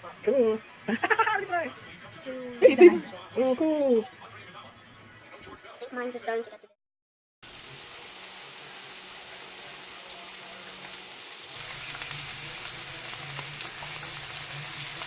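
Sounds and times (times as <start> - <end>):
food sizzling in a frying pan: 7.4 - 15.0.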